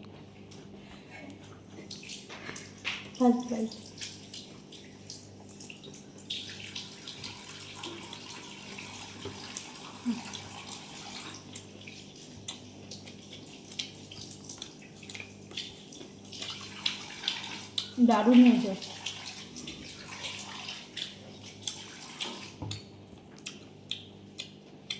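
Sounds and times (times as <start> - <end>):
chewing with wet mouth clicks: 11.4 - 18.0, 18.8 - 24.9.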